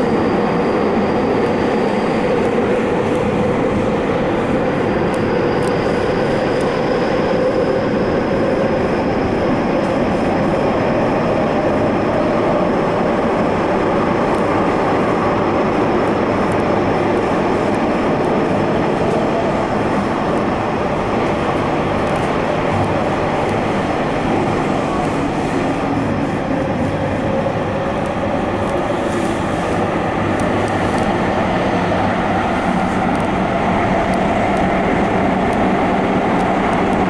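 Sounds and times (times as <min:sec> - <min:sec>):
train wheels rumbling on rails: 0:00.0 - 0:37.0.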